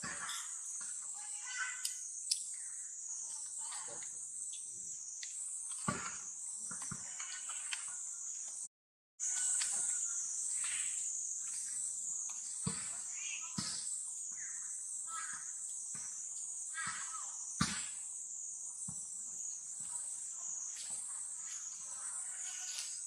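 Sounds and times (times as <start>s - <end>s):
high-pitched insect chorus: 0.0s - 23.0s.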